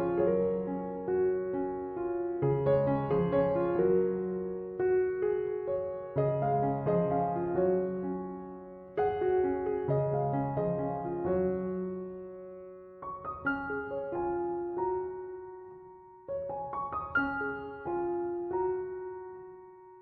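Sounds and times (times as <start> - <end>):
soft solo piano: 0.0 - 20.0.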